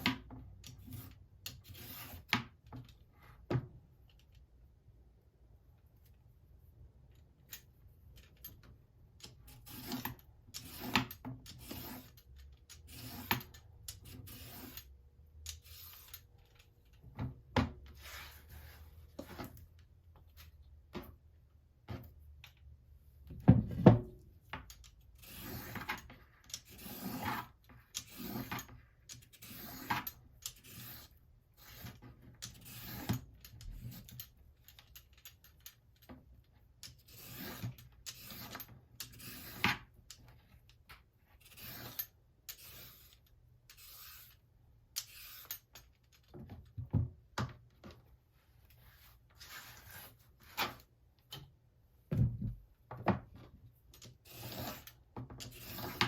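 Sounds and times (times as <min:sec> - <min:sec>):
peeler scraping carrot: 0:00.8 - 0:02.4, 0:09.3 - 0:16.3, 0:25.2 - 0:34.2, 0:36.9 - 0:39.9, 0:41.4 - 0:44.4, 0:45.0 - 0:45.7, 0:54.1 - 0:56.0.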